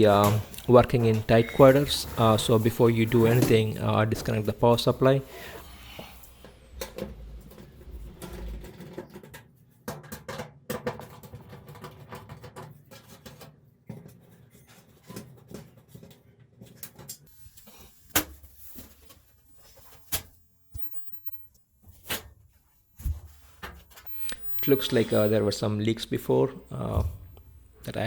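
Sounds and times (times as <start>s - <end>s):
low hum: 0.0s - 9.0s, 22.8s - 28.0s.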